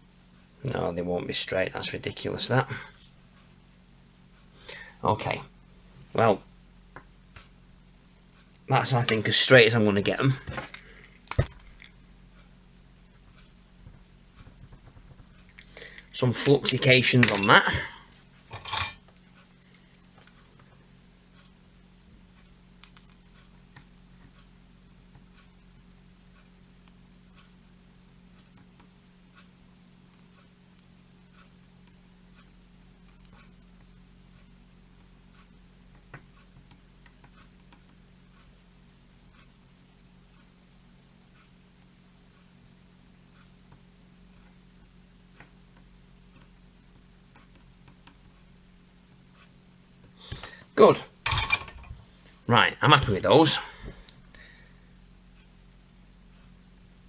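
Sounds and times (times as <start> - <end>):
low electrical hum: 0.0 - 57.0
faint clicks and taps: 6.9 - 7.6, 13.1 - 16.1, 28.4 - 38.5, 43.1 - 48.5.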